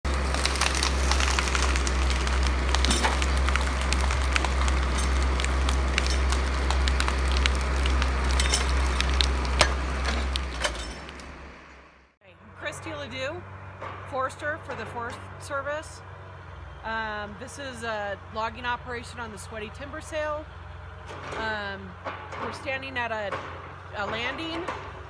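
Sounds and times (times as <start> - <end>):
wood and branches cracking: 0.0 - 11.5
heavy machinery low rumble: 0.0 - 25.0.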